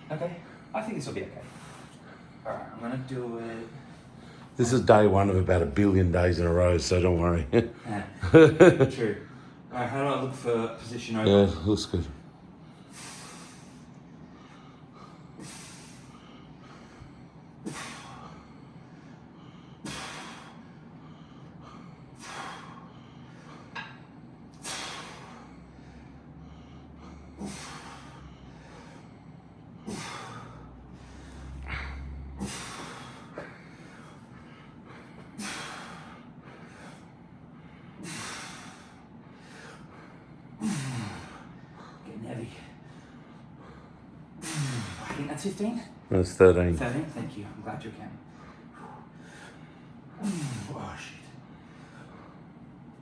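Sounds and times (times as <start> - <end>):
man exhaling forcefully: 12.9 - 13.7, 15.4 - 16.2, 17.6 - 18.4, 19.8 - 20.6, 22.2 - 22.8, 24.6 - 26.1, 27.1 - 28.8, 29.8 - 33.6, 35.4 - 36.2, 38.0 - 39.0, 40.6 - 41.5, 44.4 - 45.2, 50.2 - 50.8.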